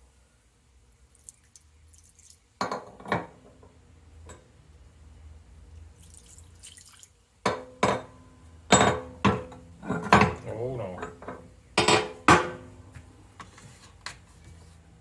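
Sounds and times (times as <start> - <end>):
liquid dripping and splashing: 0.8 - 2.6, 5.7 - 7.2.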